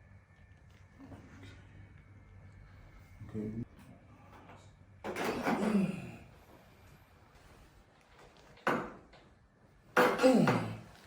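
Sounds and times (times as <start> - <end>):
person groaning: 10.2 - 10.9.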